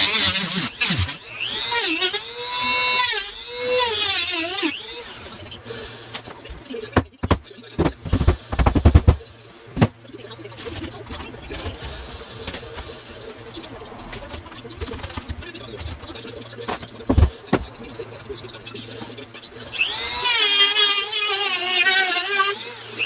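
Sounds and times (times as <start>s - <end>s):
cordless drill running: 0.0s - 5.4s, 19.7s - 23.0s
boards knocking and thudding: 7.0s - 9.2s, 16.7s - 17.7s.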